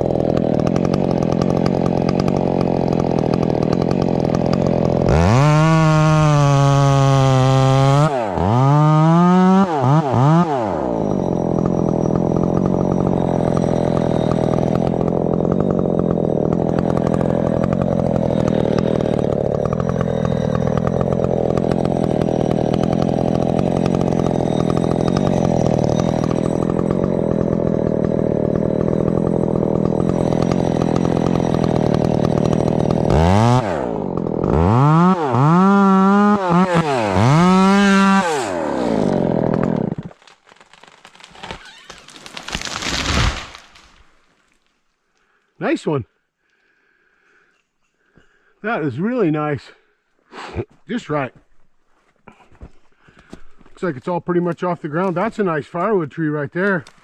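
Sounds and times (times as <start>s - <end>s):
chainsaw revving and idling: 0.0s - 43.8s, 53.3s - 57.0s.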